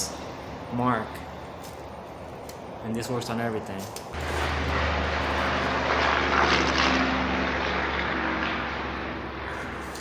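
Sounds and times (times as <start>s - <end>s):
miter saw cutting wood: 4.2s - 8.6s.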